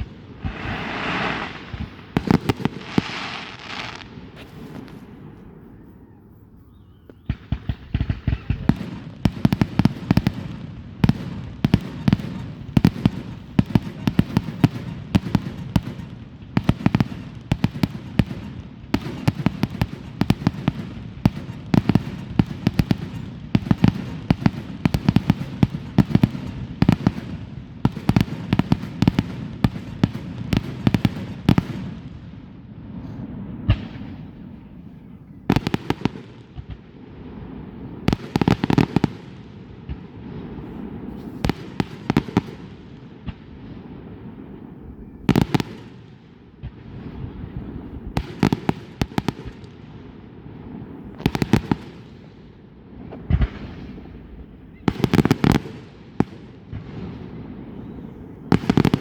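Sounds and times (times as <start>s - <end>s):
fireworks cracking and popping: 0.0s - 5.5s, 7.1s - 10.5s, 51.2s - 52.0s, 58.5s - 59.0s.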